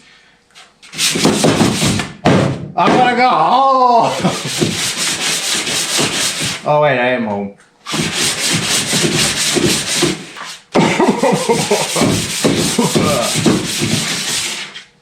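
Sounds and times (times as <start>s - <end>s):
sanding rasping hiss: 4.1s - 6.6s, 7.9s - 14.8s.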